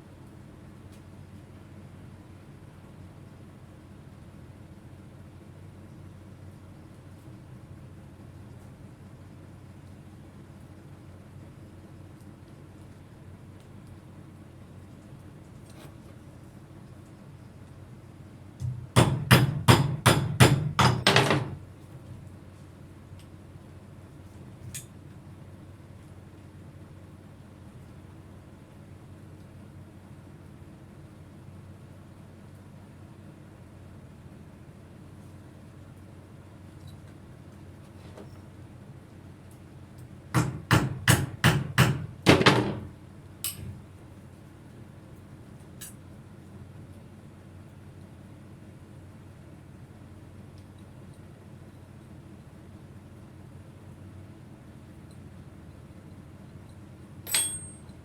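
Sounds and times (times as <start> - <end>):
hammer striking: 18.6 - 21.5, 40.4 - 42.8, 57.3 - 57.9.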